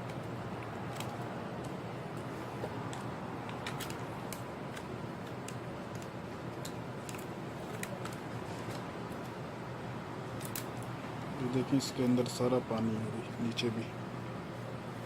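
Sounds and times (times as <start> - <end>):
laptop parts clicking: 0.0 - 9.4, 10.4 - 10.9
low background hum: 0.0 - 15.0.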